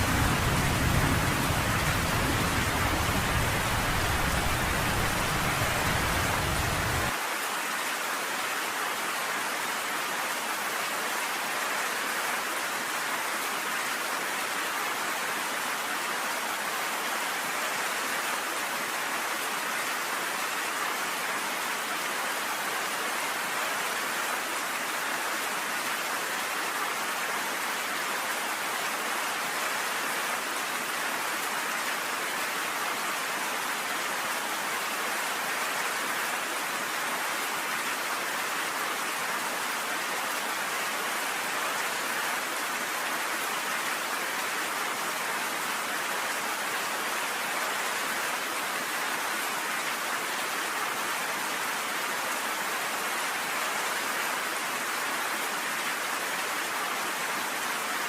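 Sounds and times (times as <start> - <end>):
rain on a porch: 0.0 - 58.0.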